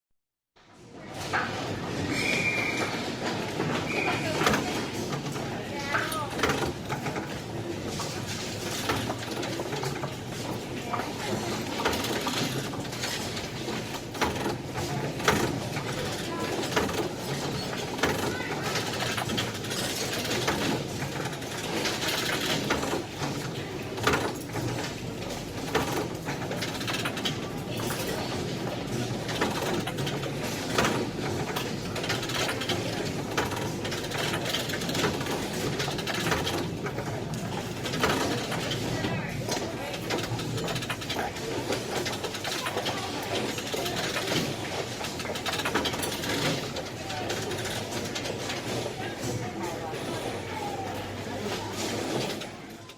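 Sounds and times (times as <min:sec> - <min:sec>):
turnstile clacks: 0:00.6 - 0:52.9
crowd chatter: 0:00.7 - 0:52.9
station hubbub: 0:00.8 - 0:52.9.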